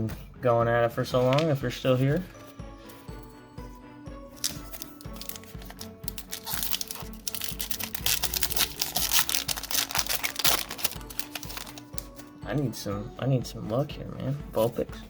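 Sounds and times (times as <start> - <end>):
background music with steady beat: 0.0 - 15.0
foil wrapper crinkling and tearing: 4.4 - 12.2.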